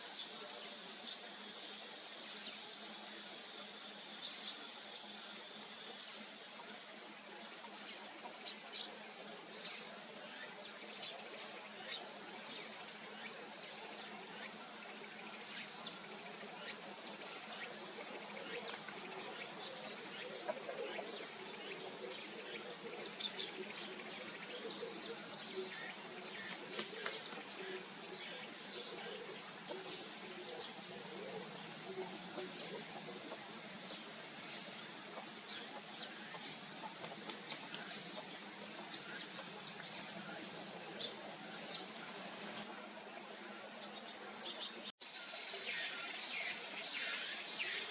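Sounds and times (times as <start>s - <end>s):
high-pitched insect drone: 45.0s - 47.9s.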